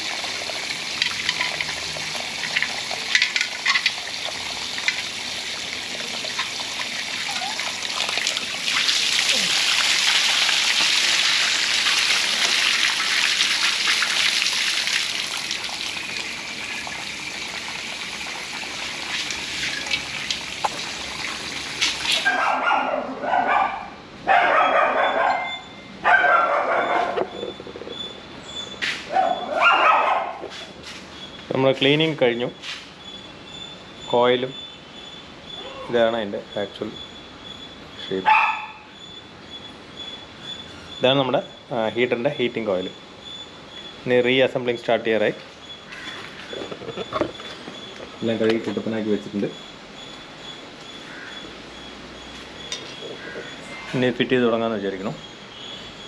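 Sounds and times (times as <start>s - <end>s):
running water hissing: 0.0s - 22.4s
dog barking: 22.2s - 27.3s, 29.1s - 30.5s, 38.2s - 38.9s.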